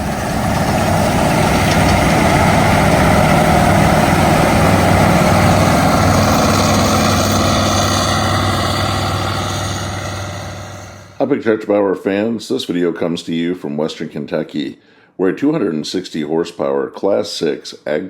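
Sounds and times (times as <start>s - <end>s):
combine engine running under load: 0.0s - 11.2s.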